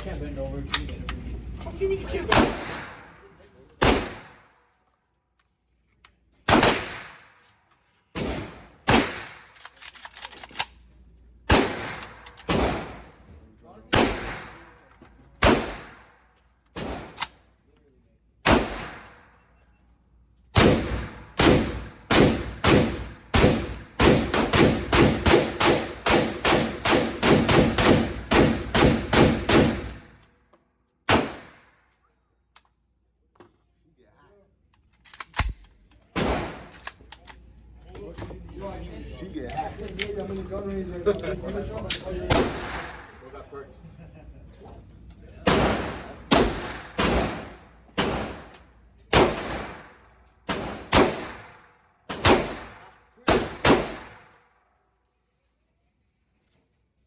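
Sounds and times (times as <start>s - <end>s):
gunshots with echo: 2.3s - 3.2s, 3.8s - 4.4s, 6.5s - 7.3s, 8.2s - 9.5s, 13.9s - 14.7s, 15.4s - 16.1s, 18.4s - 19.2s, 20.6s - 29.9s, 42.3s - 43.1s, 45.5s - 48.5s, 50.5s - 54.2s
rapid gunfire: 2.3s - 3.2s, 3.8s - 4.4s, 6.5s - 7.2s, 8.2s - 9.6s, 11.5s - 13.1s, 13.9s - 14.7s, 15.4s - 16.0s, 18.5s - 19.2s, 20.6s - 30.0s, 45.5s - 48.5s, 50.5s - 51.5s, 52.1s - 54.2s.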